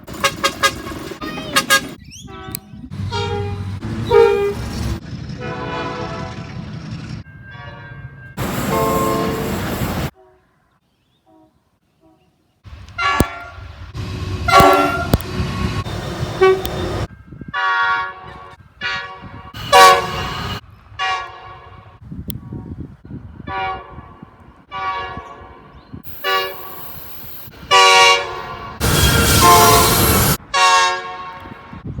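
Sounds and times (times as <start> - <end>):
low train rumble: 0.0 - 10.1, 12.7 - 31.9
train horn blasts: 0.1 - 1.0, 1.6 - 4.7, 5.4 - 6.5, 7.3 - 10.4, 12.7 - 22.0, 23.4 - 27.0, 27.7 - 31.8.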